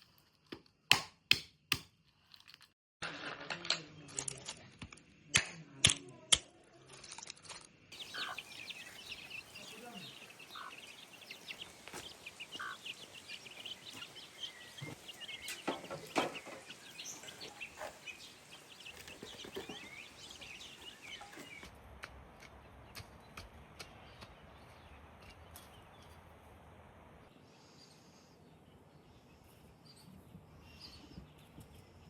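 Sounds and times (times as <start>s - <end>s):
chickens clucking: 8.0s - 21.7s.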